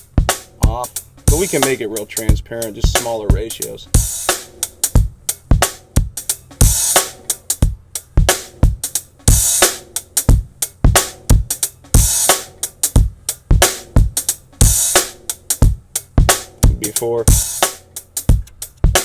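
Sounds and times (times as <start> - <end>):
drum kit loop: 0.0 - 19.0.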